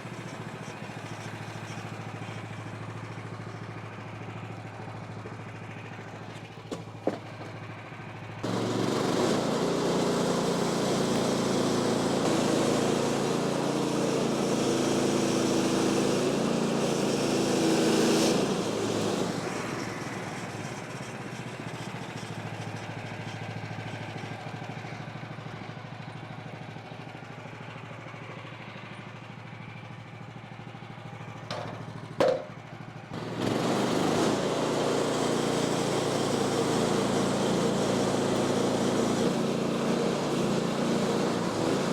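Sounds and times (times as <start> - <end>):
sawmill engine revving: 8.4 - 22.6, 33.1 - 41.9.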